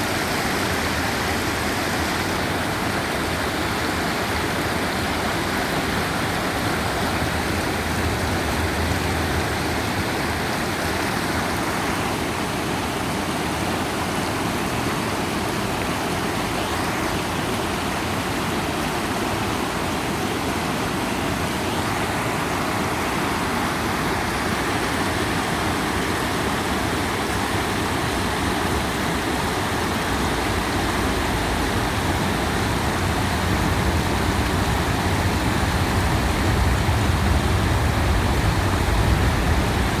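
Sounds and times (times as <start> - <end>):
river water rushing: 0.0 - 40.0
low rumble: 5.9 - 11.1, 29.6 - 40.0.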